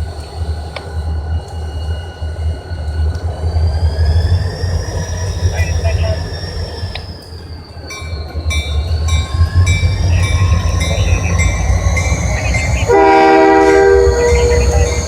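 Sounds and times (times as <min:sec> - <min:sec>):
train rumbling past: 0:00.0 - 0:15.0
locomotive air horn: 0:10.0 - 0:15.0.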